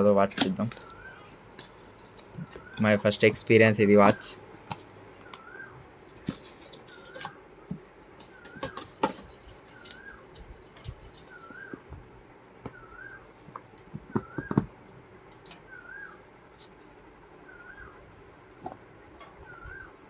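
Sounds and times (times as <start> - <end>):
high warbling chirp: 5.3 - 5.8, 9.7 - 10.4, 11.1 - 11.9, 12.7 - 13.3, 15.6 - 16.2, 17.4 - 18.1, 19.4 - 20.0.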